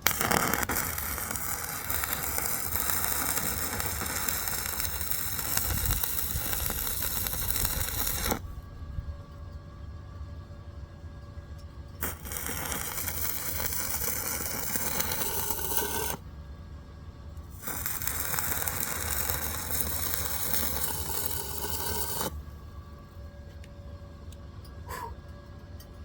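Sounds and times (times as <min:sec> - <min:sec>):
welding arc crackling: 0:00.0 - 0:08.4, 0:12.0 - 0:16.2, 0:17.4 - 0:22.4
welding machine humming: 0:00.0 - 0:08.6, 0:12.0 - 0:16.2, 0:17.4 - 0:22.6.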